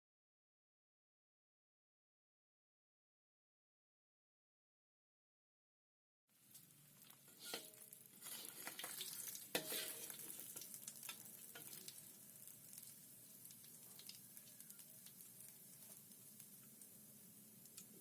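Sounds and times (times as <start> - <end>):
food sizzling in a frying pan: 6.3 - 18.0.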